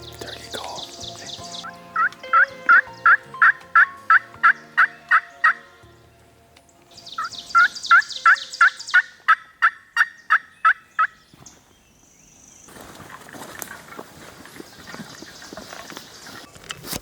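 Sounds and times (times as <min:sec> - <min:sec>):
faint background music: 0:00.0 - 0:09.2
turkey yelps: 0:07.6 - 0:11.1.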